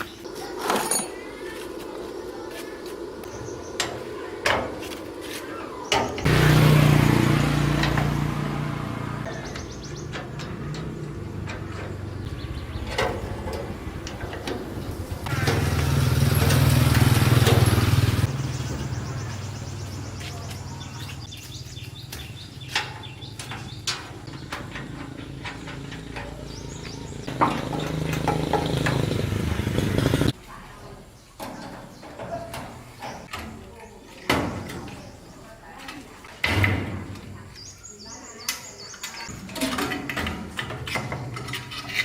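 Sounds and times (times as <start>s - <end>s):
small engine revving: 6.2s - 21.3s, 25.3s - 30.4s.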